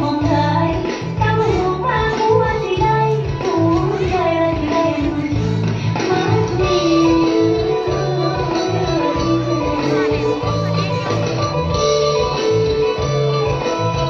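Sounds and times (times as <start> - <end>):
bass line and instrumental backing: 0.0 - 14.0
high sung melody: 0.0 - 14.0.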